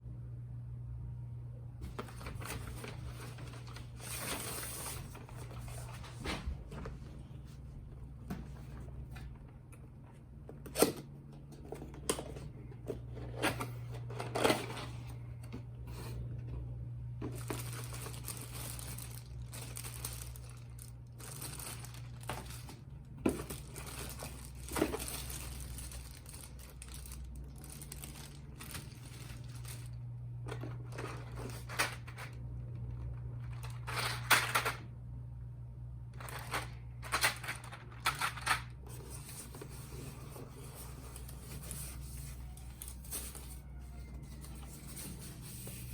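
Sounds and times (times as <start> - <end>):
steady low hum: 0.0 - 45.9
plastic crinkling: 17.2 - 32.4
packaging tearing: 17.4 - 22.8.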